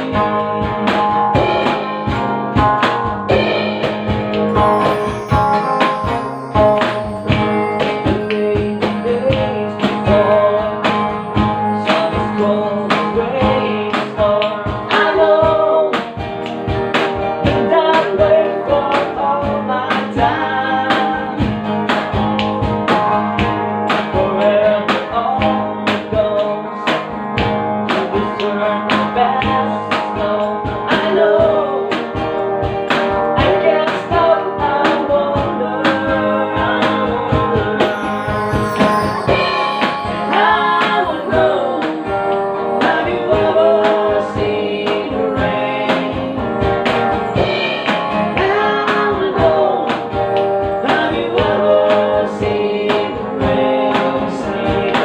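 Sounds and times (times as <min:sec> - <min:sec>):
guitar: 0:00.0 - 0:55.0
steady drum beat: 0:00.0 - 0:55.0
person singing: 0:03.3 - 0:16.1, 0:17.4 - 0:21.5, 0:33.4 - 0:46.6, 0:47.4 - 0:55.0.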